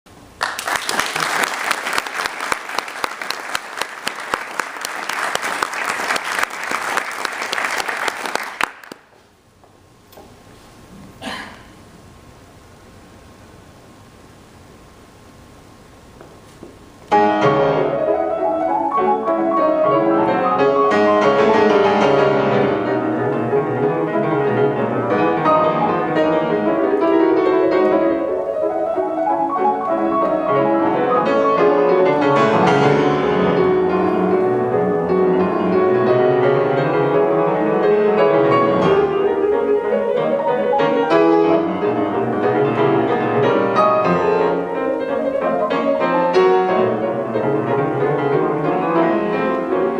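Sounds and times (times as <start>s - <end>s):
music: 17.1s - 49.9s.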